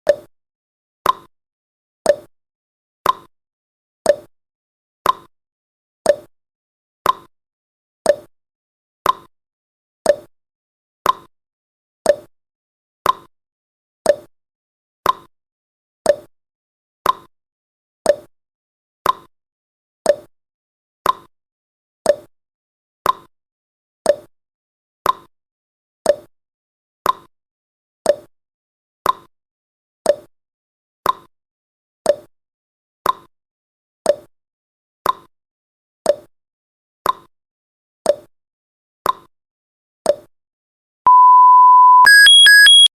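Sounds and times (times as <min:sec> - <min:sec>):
timer ticking: 0:41.1 - 0:42.9.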